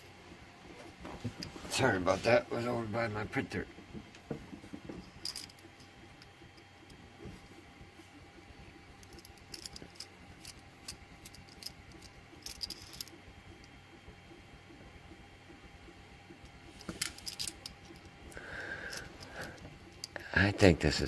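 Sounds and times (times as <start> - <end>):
lock cylinder clicking and rattling: 5.0 - 6.3, 9.0 - 13.2, 16.8 - 18.2.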